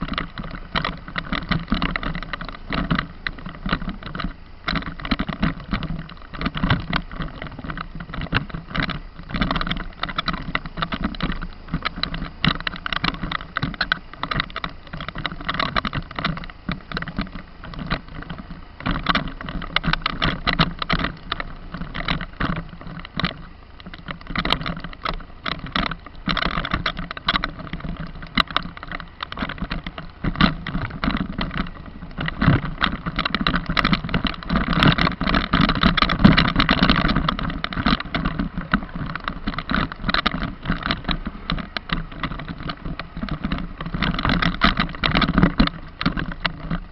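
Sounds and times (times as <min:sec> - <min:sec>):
knocks and rattles from jolting ride: 0:00.0 - 0:46.9
vehicle engine hum: 0:00.0 - 0:46.9.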